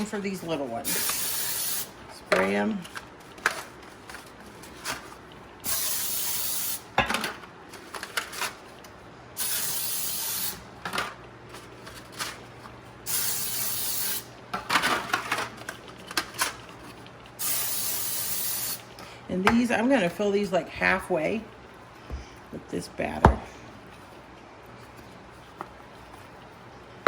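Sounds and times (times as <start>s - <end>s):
aerosol can spraying: 0.8s - 2.0s, 5.7s - 6.8s, 9.4s - 10.6s, 13.1s - 14.3s, 17.4s - 18.9s.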